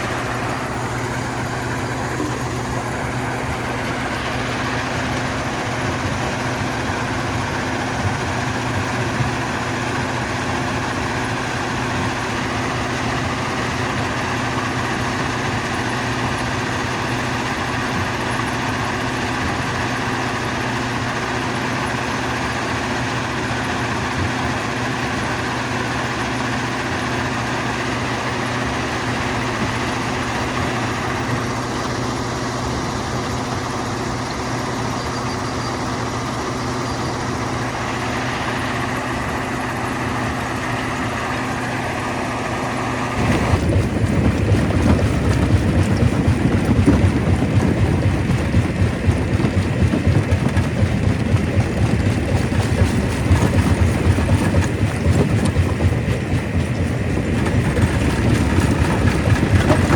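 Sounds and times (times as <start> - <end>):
stone crusher machinery droning: 0.0 - 59.9
rough low rumble: 43.2 - 59.9.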